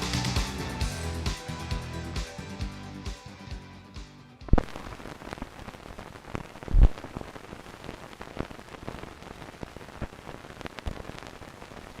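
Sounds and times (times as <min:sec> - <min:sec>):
hiss with crackles and pops: 0:04.5 - 0:12.0.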